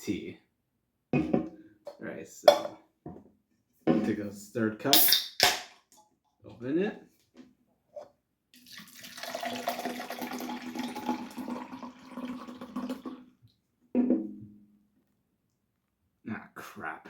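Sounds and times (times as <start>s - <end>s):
liquid pouring into cup: 8.6s - 13.3s.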